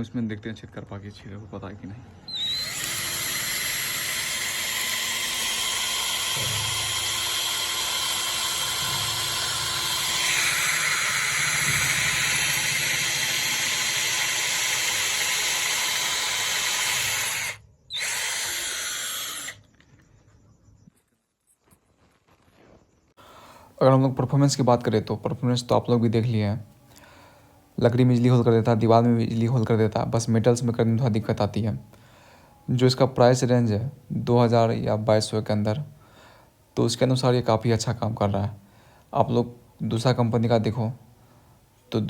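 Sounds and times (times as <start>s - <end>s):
cordless drill boring into wall: 2.3s - 19.6s.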